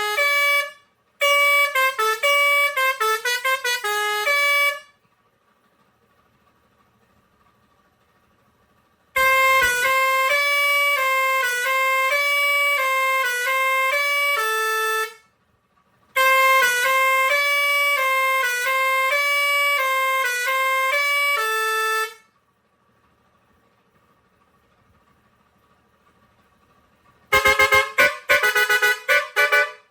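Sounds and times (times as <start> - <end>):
musical air horn melody: 0.0 - 5.0, 9.2 - 15.3, 16.2 - 22.4, 27.3 - 29.9.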